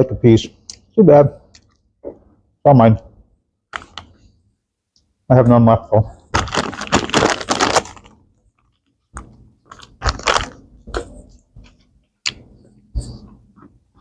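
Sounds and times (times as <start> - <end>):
wet mouth smacks and clicks: 12.2 - 12.5.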